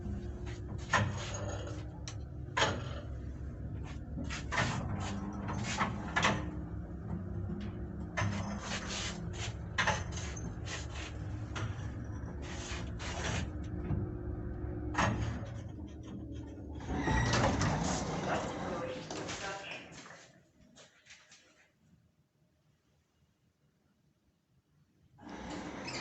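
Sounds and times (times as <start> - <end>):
lift guides squeaking and creaking: 0.0 - 19.6, 25.3 - 26.0
lift running hum: 0.0 - 19.8.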